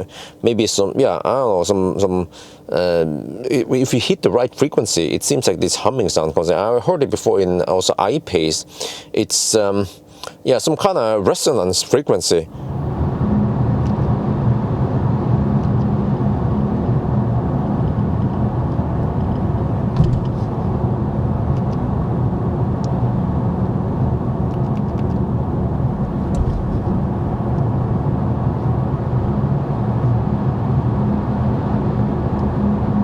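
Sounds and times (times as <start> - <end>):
low resonant hum: 12.5 - 33.0
road and wind noise in car: 12.5 - 33.0.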